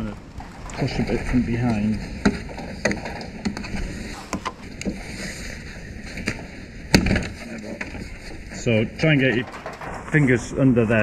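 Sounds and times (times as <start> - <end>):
plastic grille clicks and knocks: 9.2 - 10.2.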